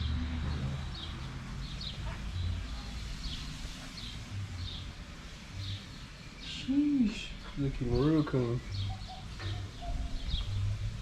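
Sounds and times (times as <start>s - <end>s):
small bird chirping: 5.6s - 11.0s.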